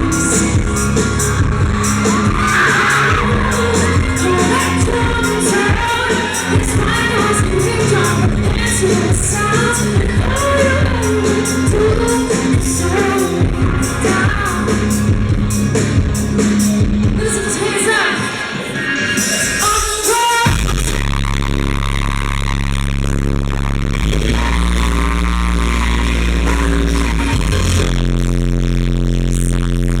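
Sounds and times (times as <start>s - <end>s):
live rock band playing: 0.0s - 17.4s
woman singing: 2.0s - 15.1s, 19.6s - 20.7s.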